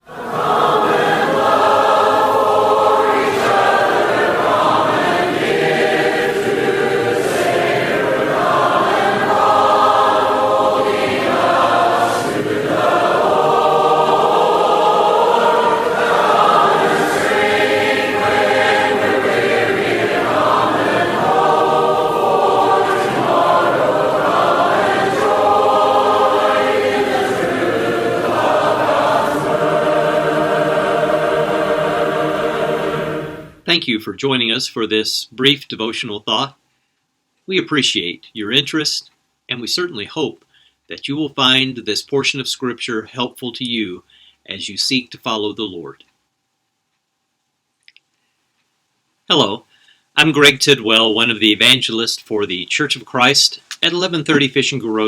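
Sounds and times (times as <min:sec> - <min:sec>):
choir singing: 0:00.0 - 0:33.6.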